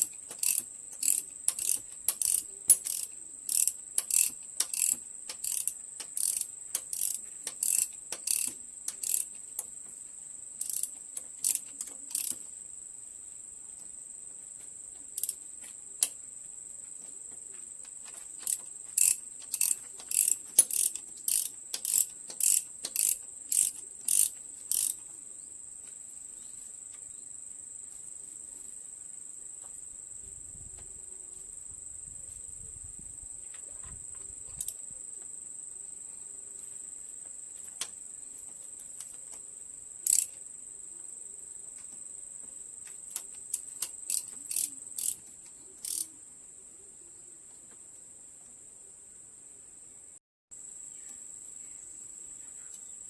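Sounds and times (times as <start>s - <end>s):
ratchet wrench clicking: 0.0s - 9.4s, 10.6s - 12.4s, 15.2s - 15.4s, 18.4s - 25.0s, 34.6s - 34.8s, 40.0s - 40.4s, 43.1s - 45.2s, 45.8s - 46.1s
high insect trill: 0.0s - 49.6s, 50.5s - 53.0s.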